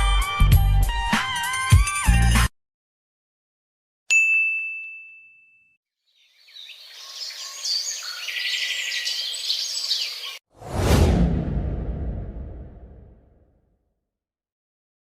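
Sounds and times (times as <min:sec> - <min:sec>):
birds chirping: 0:06.1 - 0:10.4.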